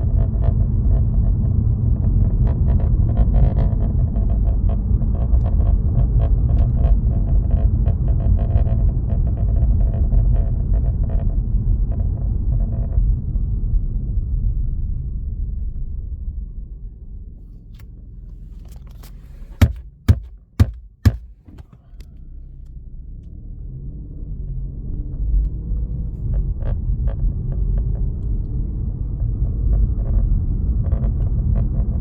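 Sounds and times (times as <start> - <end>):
road rumble inside car: 0.0 - 32.0
dashboard rattle clicks: 18.3 - 22.0.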